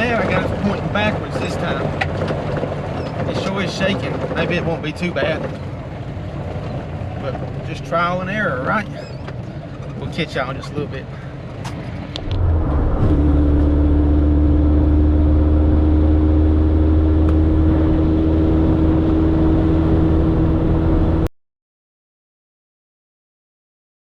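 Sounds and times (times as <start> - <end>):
car engine drone from inside cab: 0.0 - 21.3
steady whine: 10.0 - 21.2.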